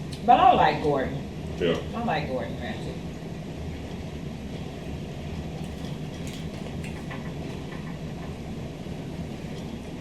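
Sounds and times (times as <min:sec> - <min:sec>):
low background hum: 0:00.0 - 0:10.0.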